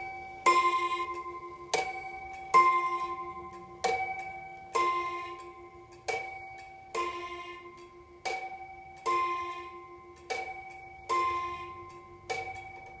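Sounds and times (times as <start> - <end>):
wall clock ding-dong strikes: 0.0 - 13.0.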